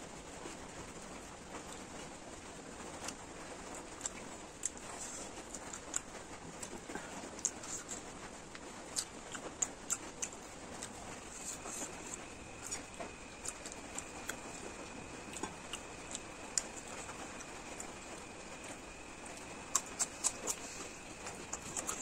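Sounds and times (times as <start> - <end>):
wet mouth eating sounds: 4.0 - 8.1, 8.9 - 22.0
faint high whine: 10.9 - 22.0.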